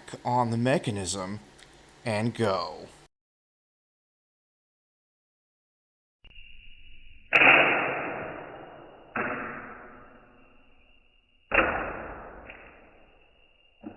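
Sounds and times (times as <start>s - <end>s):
launcher shot snapping: 7.4s - 8.6s.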